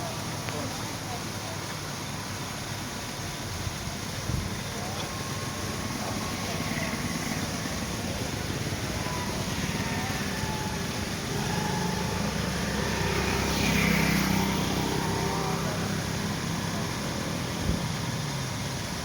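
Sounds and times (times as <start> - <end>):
water rushing from waterfall: 0.0 - 19.0.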